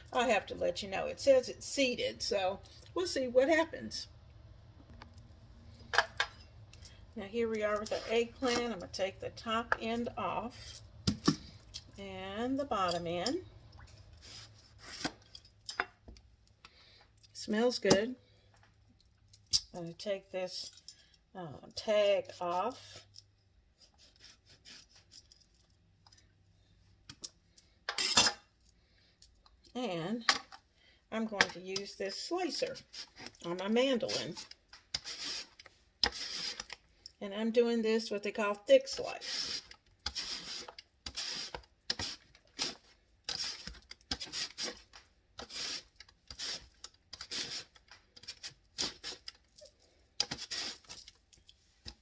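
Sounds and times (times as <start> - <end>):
vegetable rasping on mandoline blade: 39.2 - 44.8, 45.4 - 49.3
sticker peeling scratch: 45.4 - 49.3.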